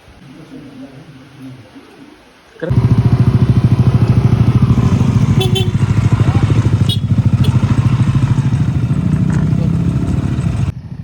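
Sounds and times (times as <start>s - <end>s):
engine running with rapid throb: 2.7s - 11.0s.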